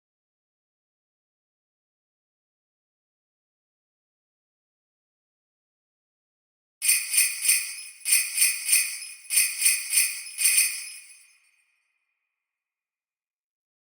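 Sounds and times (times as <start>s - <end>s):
sleigh bells jingling: 6.8s - 11.5s.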